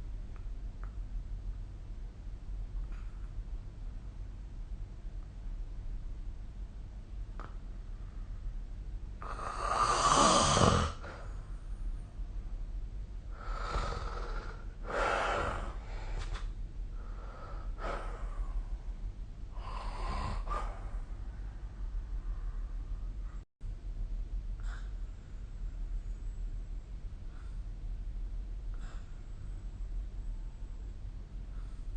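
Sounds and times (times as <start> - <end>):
person snoring: 9.2 - 11.2, 13.3 - 15.8, 19.5 - 20.9.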